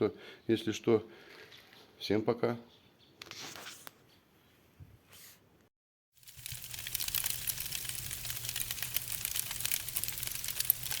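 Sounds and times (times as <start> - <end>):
dense crackling clicks: 6.2 - 11.0.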